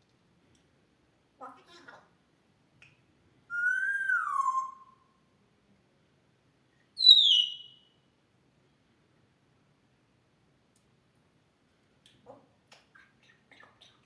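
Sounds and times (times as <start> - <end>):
parrot whistling: 3.5 - 5.0, 7.0 - 7.8.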